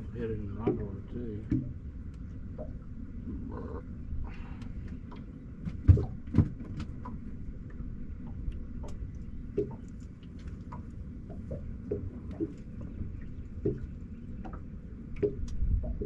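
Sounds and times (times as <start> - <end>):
steady low rumble: 0.0 - 16.0
loud dull knocks: 5.6 - 6.9.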